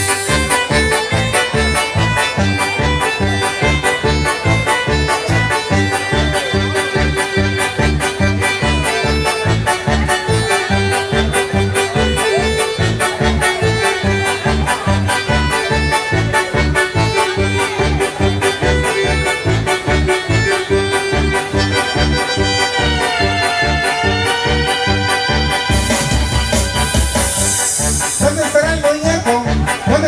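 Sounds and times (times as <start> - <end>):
accordion-like keyboard lead: 0.0 - 30.0
drum-and-bass dance beat: 25.6 - 30.0.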